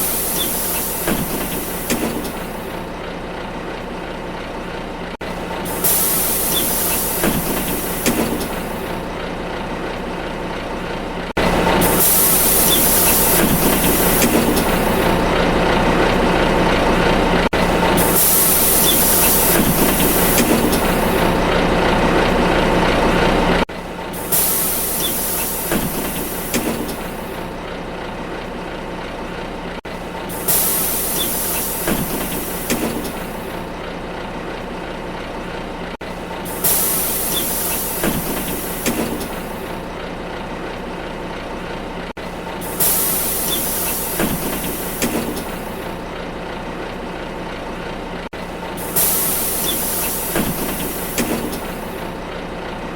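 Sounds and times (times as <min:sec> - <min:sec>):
pneumatic door hiss: 0:00.0 - 0:02.8, 0:05.6 - 0:09.1, 0:11.4 - 0:15.3, 0:17.5 - 0:21.4, 0:24.1 - 0:27.5, 0:30.2 - 0:33.7, 0:36.4 - 0:39.8, 0:42.5 - 0:46.0, 0:48.7 - 0:52.2
low bus rumble: 0:00.0 - 0:52.9.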